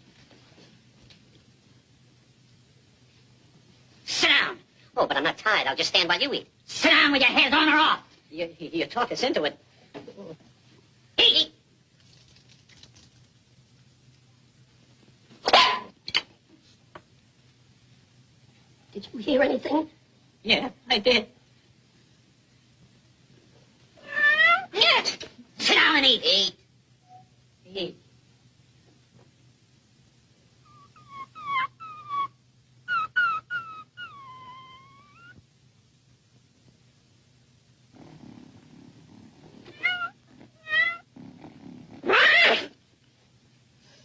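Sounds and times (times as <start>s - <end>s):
high-pitched whimpering whines: 30.6s - 35.4s.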